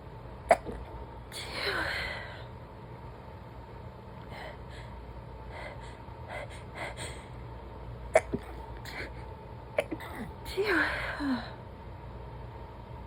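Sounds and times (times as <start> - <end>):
stifled sneeze: 0.5 - 1.7, 8.1 - 9.1.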